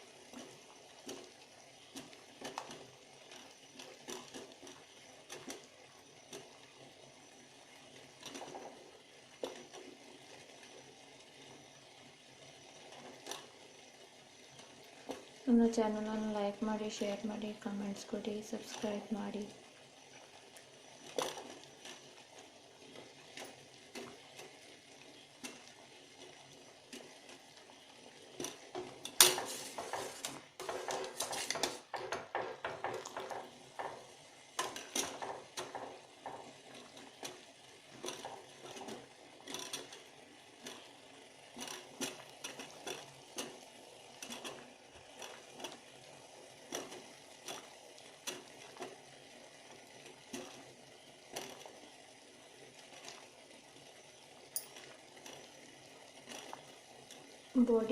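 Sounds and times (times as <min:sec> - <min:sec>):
metal spoon scraping pot: 0:29.2 - 0:31.8.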